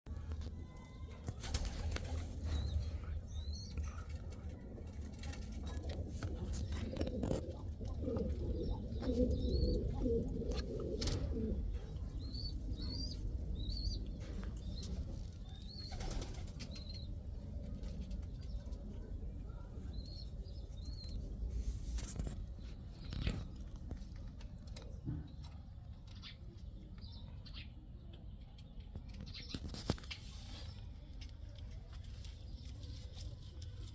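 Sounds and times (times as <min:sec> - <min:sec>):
wings flapping: 0:01.3 - 0:02.8, 0:15.8 - 0:16.8
pigeons cooing: 0:05.6 - 0:15.0.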